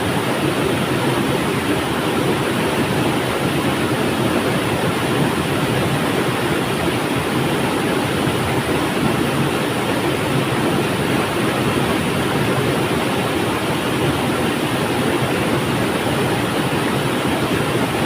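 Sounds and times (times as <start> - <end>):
river water rushing: 0.0 - 18.0.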